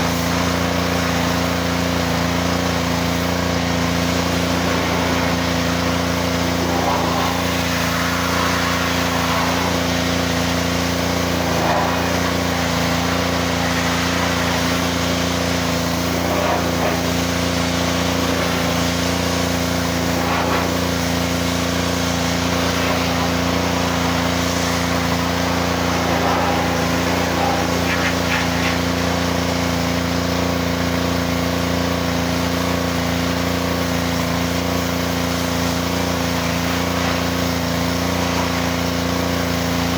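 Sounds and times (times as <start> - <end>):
pressure washer engine running: 0.0 - 39.9
even hiss: 3.3 - 30.6.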